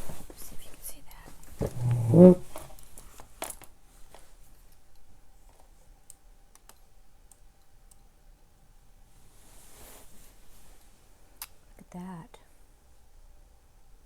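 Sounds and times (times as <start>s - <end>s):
light clicks and taps of handling: 2.7s - 8.1s.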